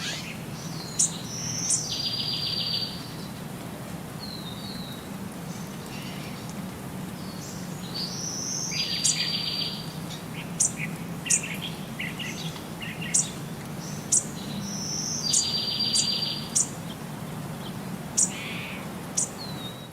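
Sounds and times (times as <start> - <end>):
bird singing with buzzy trill: 0.0 - 3.1, 7.4 - 16.8, 17.6 - 19.9.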